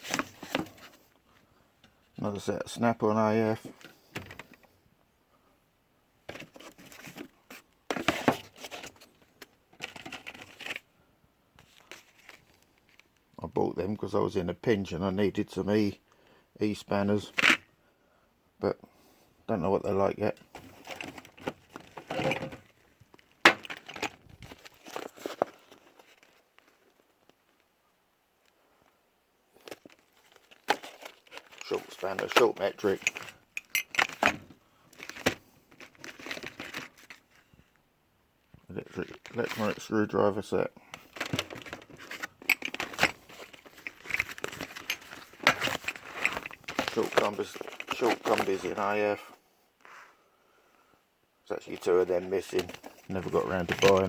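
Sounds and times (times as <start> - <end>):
tools rattling: 20.5 - 22.7, 29.8 - 37.2, 40.9 - 48.7, 52.4 - 54.0
metal spanners clinking: 31.5 - 34.2
metal tools clicking in drawer: 32.8 - 34.2.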